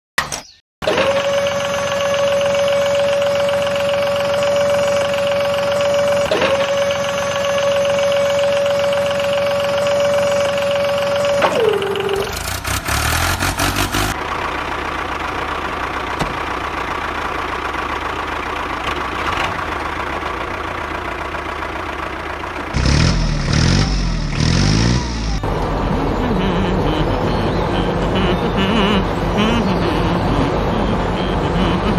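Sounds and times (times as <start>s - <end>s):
tractor engine revving: 0.8s - 31.9s
horn-like tone: 1.2s - 12.4s, 26.2s - 31.9s.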